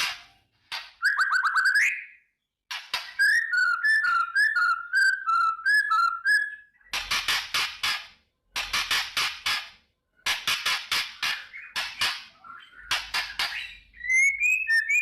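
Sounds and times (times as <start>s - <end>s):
bird whistling song: 0.9s - 2.3s, 3.0s - 7.0s, 11.4s - 15.0s
bird rasping chatter: 6.8s - 14.0s.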